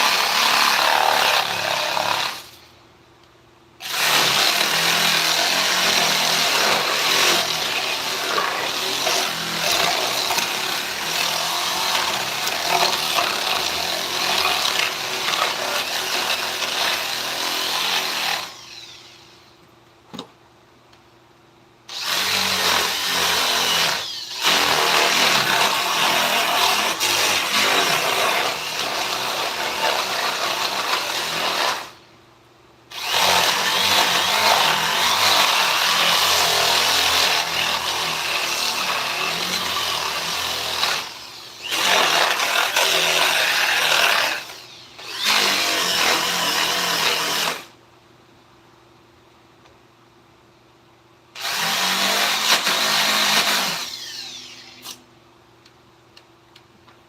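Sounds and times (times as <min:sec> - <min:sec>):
power tool grinding wood: 0:00.0 - 0:02.5, 0:03.8 - 0:19.3, 0:21.9 - 0:31.9, 0:32.9 - 0:47.7.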